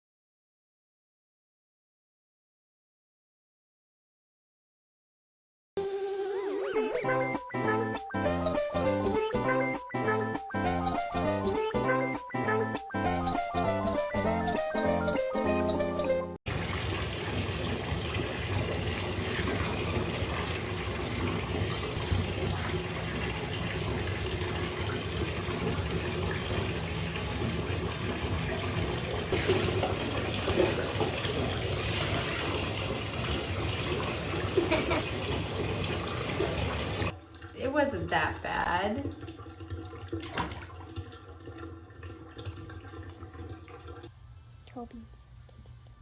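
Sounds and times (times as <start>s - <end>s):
running water: 16.5s - 44.1s
water splashing: 16.5s - 44.1s.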